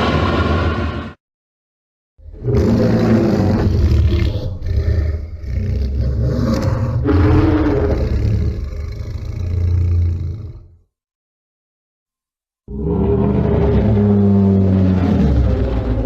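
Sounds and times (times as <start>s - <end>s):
monster growl: 2.3s - 10.8s, 12.7s - 16.0s.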